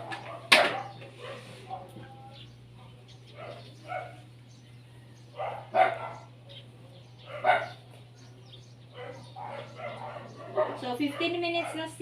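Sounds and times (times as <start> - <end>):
dog barking: 0.0 - 2.0, 2.8 - 4.3, 5.3 - 6.4, 7.2 - 7.9, 8.9 - 12.0.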